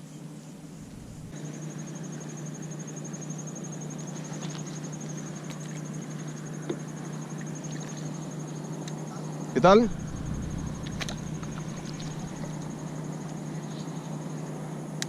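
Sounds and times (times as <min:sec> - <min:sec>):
insect trill: 0:00.4 - 0:15.0
low hum: 0:00.6 - 0:01.4, 0:09.1 - 0:14.3.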